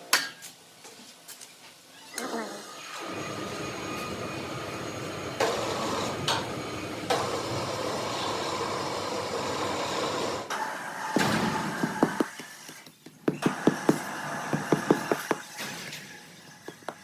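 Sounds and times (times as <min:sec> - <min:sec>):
workshop machinery running: 0:02.8 - 0:17.0
sharp knocks: 0:11.2 - 0:15.9.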